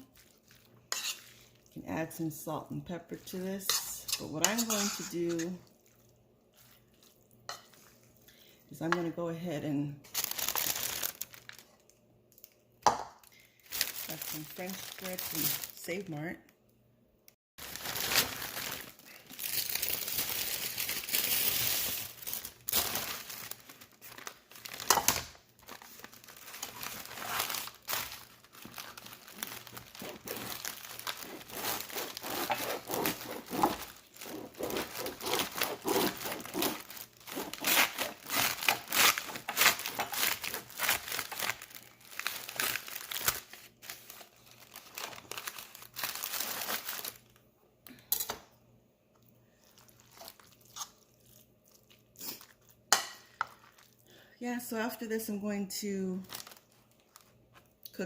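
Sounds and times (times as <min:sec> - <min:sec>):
plastic bag crinkling: 0:10.1 - 0:12.0, 0:13.4 - 0:16.1, 0:17.6 - 0:47.4, 0:56.1 - 0:57.4.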